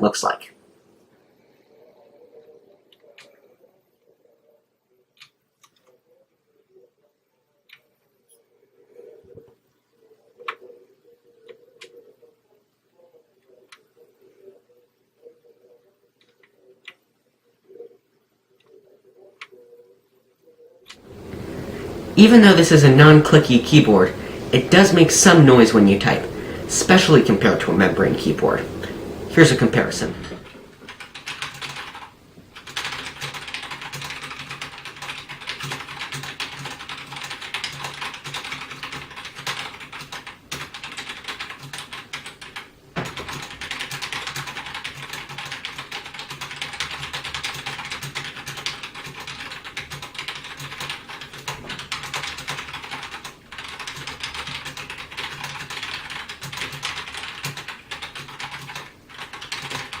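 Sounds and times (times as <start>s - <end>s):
fast typing on keyboard: 21.1s - 60.0s.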